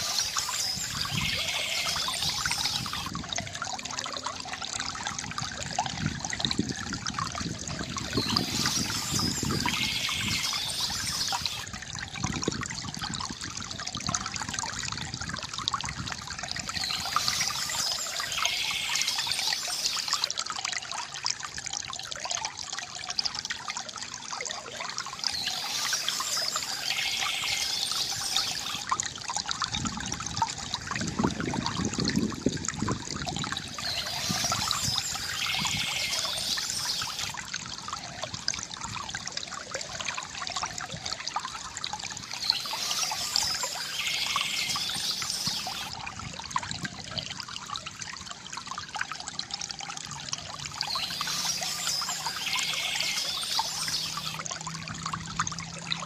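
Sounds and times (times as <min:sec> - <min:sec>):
small birds chirping: 0:00.0 - 0:03.1, 0:08.1 - 0:11.6, 0:16.7 - 0:20.3, 0:25.1 - 0:28.8, 0:33.7 - 0:37.3, 0:42.3 - 0:45.9, 0:50.8 - 0:54.4
stream trickling and gurgling: 0:00.0 - 0:56.0.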